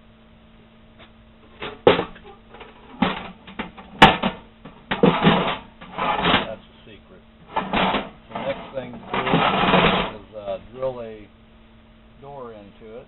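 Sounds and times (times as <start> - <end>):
sharp knocks and clanks on steel: 1.5 - 6.6, 7.4 - 10.2.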